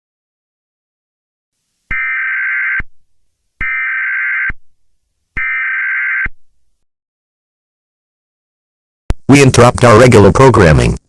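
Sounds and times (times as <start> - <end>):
buzzy digital data screeches: 1.9 - 2.8.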